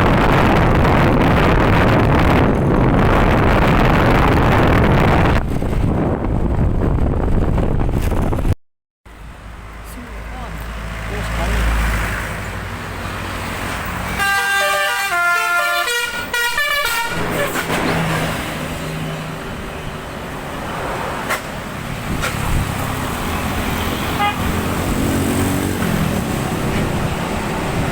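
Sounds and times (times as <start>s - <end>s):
vehicle and traffic noise: 0.0s - 27.9s
bus horn playing a tune: 14.1s - 17.8s, 24.0s - 24.6s.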